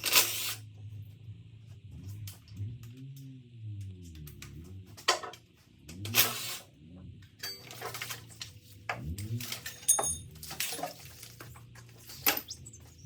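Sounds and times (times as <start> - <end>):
metal parts knocking and clanking: 5.0 - 6.2, 7.3 - 12.6.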